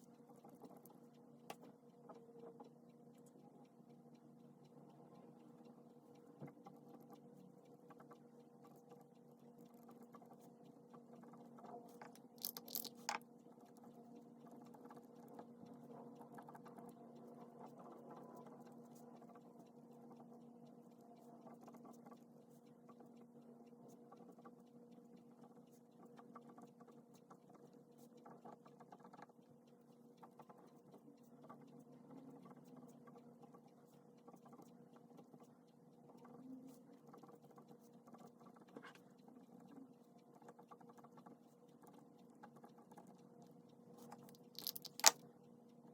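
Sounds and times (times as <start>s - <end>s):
low electrical hum: 0.0s - 26.0s.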